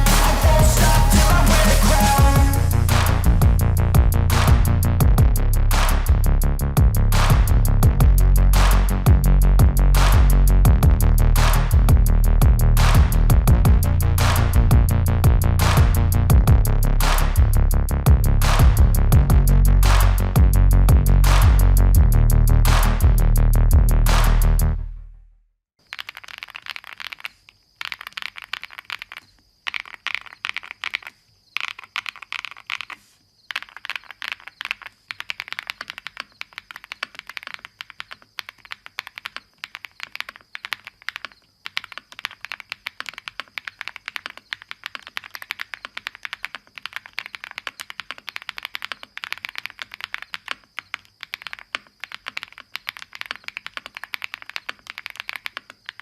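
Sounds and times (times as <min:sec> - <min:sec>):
fast mechanical keyboard typing: 0:25.9 - 0:56.0.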